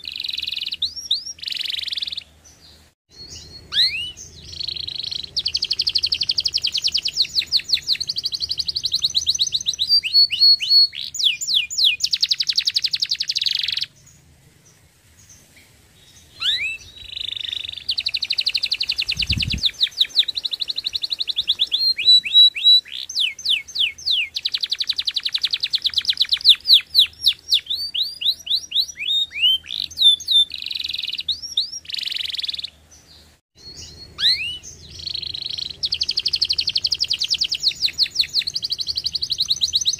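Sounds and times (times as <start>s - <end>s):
canary singing: 0.0s - 14.2s, 16.0s - 39.9s.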